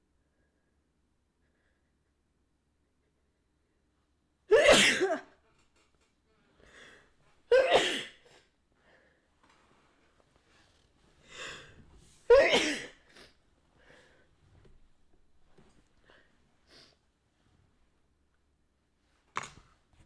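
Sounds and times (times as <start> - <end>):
person sneezing: 4.5 - 5.3, 7.5 - 8.2, 12.3 - 13.2.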